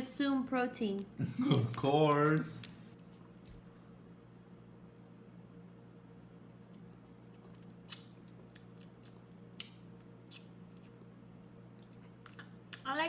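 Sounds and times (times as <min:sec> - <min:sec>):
chewing and mouth clicks: 0:06.7 - 0:12.9.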